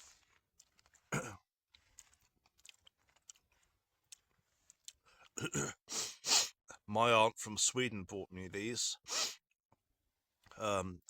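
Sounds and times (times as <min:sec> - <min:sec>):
man clearing throat: 0:01.1 - 0:01.4, 0:05.4 - 0:05.8.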